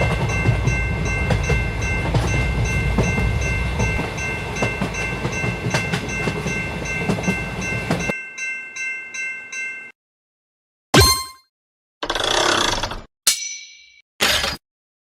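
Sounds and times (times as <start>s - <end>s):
train rumble and wheel clacks: 0.0s - 8.2s
crossing alarm bell ringing: 0.0s - 10.0s.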